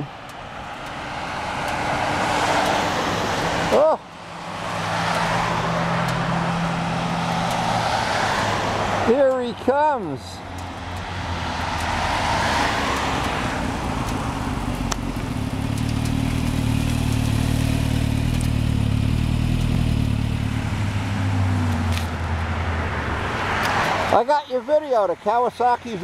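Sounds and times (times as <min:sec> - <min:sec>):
passing traffic: 0:00.0 - 0:26.0
motorcycle engine idling: 0:13.6 - 0:20.7.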